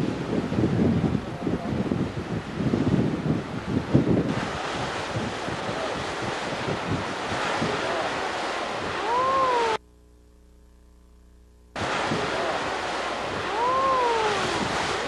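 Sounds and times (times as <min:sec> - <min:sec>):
ocean surf: 0:00.0 - 0:09.8, 0:11.8 - 0:15.0
wind buffeting microphone: 0:00.0 - 0:09.8, 0:11.8 - 0:15.0
faint steady hum: 0:08.7 - 0:14.4.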